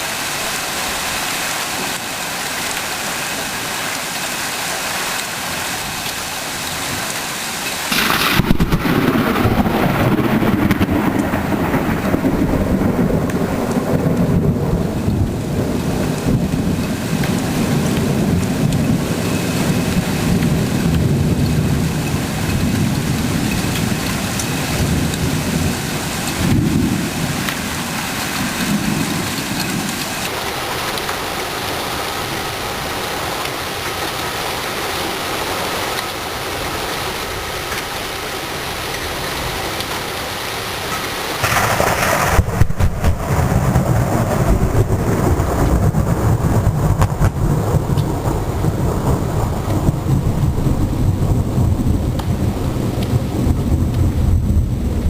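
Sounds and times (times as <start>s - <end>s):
steady rain hiss: 0.0s - 55.0s
thunder crack: 7.9s - 30.8s, 41.4s - 55.0s
rolling thunder: 7.9s - 30.9s, 41.4s - 55.0s.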